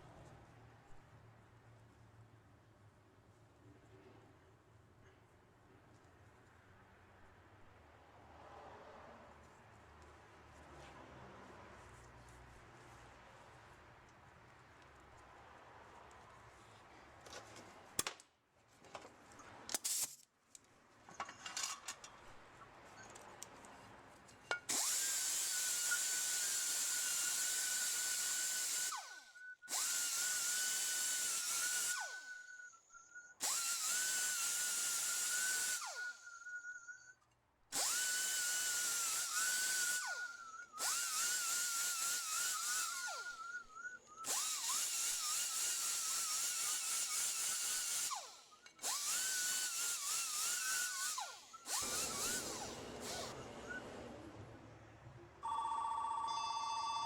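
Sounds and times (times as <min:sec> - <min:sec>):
clicks of parts being handled: 0:19.7 - 0:22.2
air tool whining: 0:24.6 - 0:32.7, 0:33.4 - 0:37.0, 0:37.8 - 0:54.6.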